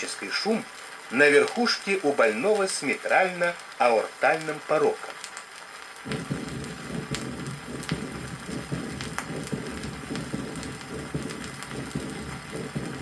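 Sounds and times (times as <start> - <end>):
vinyl record clicks: 5.0 - 13.0
heart murmur whooshing hiss: 6.1 - 13.0
heartbeat thuds: 6.1 - 13.0.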